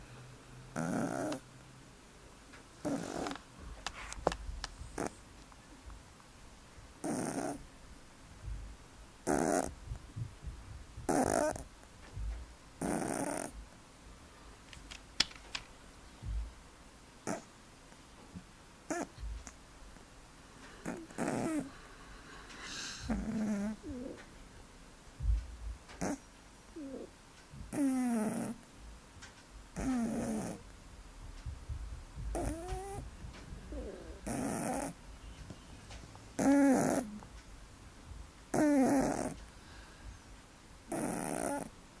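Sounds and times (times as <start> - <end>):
cat snoring: 0.7 - 1.4, 2.8 - 3.4, 4.7 - 5.2, 7.0 - 7.6, 9.2 - 9.8, 11.0 - 11.6, 12.8 - 13.6, 17.2 - 17.5, 18.9 - 19.2, 20.8 - 21.7, 22.7 - 24.2, 26.0 - 27.1, 27.7 - 28.6, 29.8 - 30.6, 32.2 - 35.6, 36.4 - 37.2, 37.9 - 39.4, 40.9 - 41.7.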